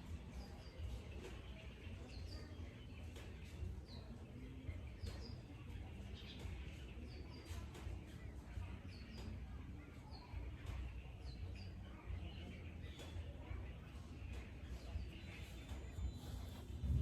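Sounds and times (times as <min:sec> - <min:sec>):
low background rumble: 0:16.6 - 0:17.0.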